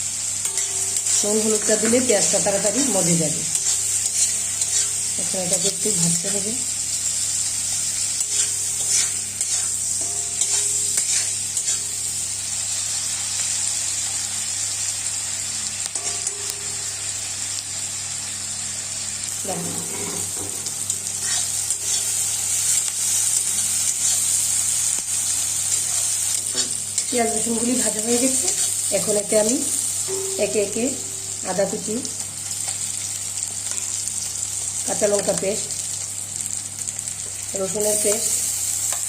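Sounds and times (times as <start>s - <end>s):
onion sizzling in hot oil: 0.0s - 39.0s
spatula scraping pan: 0.4s - 5.2s, 8.0s - 12.0s, 19.5s - 24.3s, 25.8s - 29.2s.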